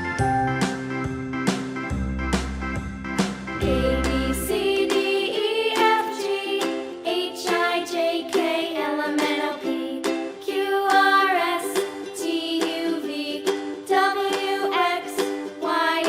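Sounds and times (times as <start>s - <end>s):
cheerful children's tune: 0.0s - 16.0s
plucked ukulele: 0.0s - 16.0s
person singing: 3.6s - 16.0s.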